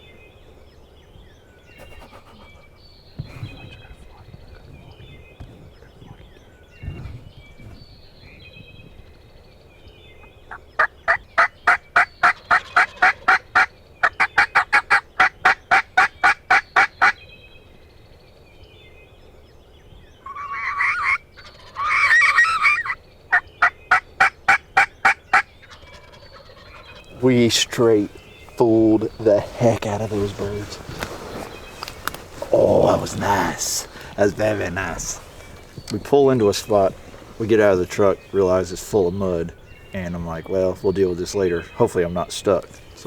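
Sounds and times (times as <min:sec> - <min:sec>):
raspy turkey call bursts: 0:01.8 - 0:02.8, 0:10.8 - 0:17.2, 0:20.2 - 0:26.9
wild turkeys calling: 0:10.2 - 0:17.2, 0:20.2 - 0:43.0.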